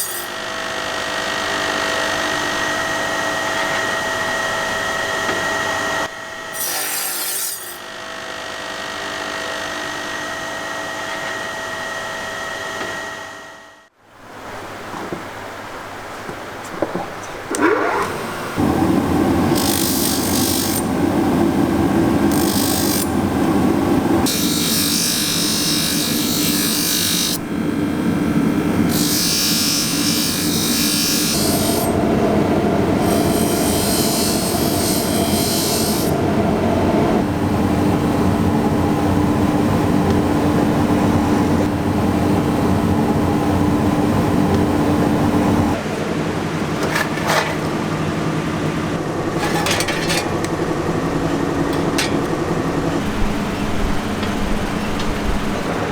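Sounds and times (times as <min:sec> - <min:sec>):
power tool grinding metal: 0:06.5 - 0:08.0, 0:17.5 - 0:27.4, 0:28.9 - 0:32.1, 0:32.9 - 0:36.3.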